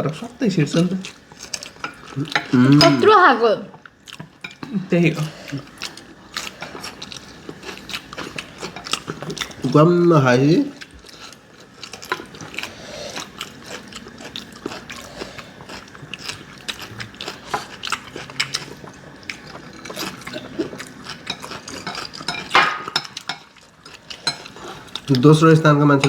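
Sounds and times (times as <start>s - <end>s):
cutlery clatter: 21.3s - 23.5s
cutlery tapping bowls: 21.3s - 23.5s.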